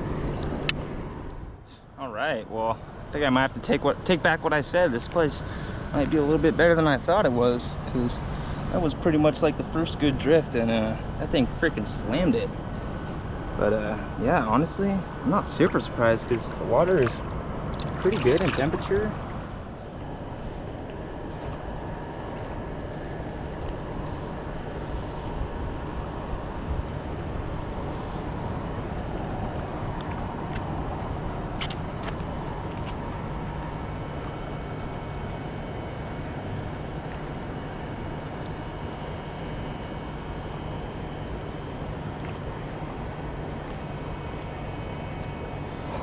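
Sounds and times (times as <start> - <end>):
river flowing: 15.6 - 24.6.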